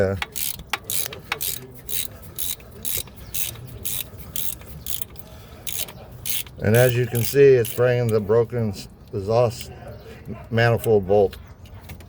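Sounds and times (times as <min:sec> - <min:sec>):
ratchet clicking: 0:00.0 - 0:08.2.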